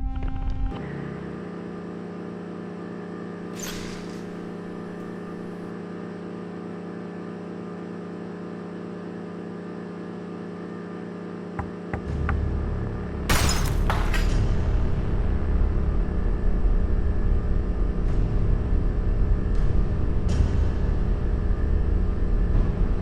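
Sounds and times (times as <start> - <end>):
steady low hum: 8.8 - 23.0.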